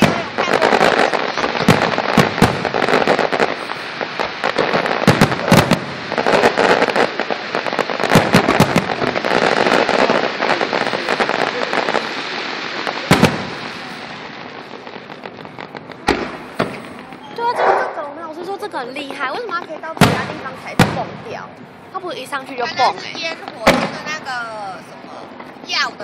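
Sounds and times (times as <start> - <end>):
firework shells bursting: 0.0 - 17.4
firework crackling: 0.0 - 26.0.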